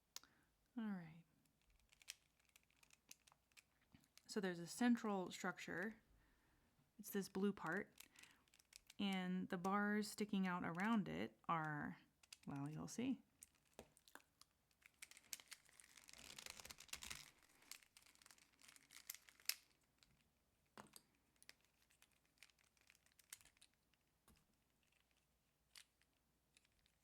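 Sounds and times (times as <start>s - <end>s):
plastic puzzle cube clicking: 1.6s - 4.2s, 13.4s - 19.8s.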